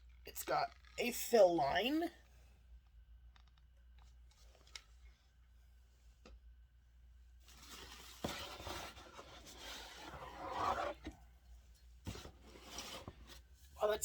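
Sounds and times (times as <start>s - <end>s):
packaging rustling and scraping: 7.4s - 11.2s, 12.0s - 13.6s.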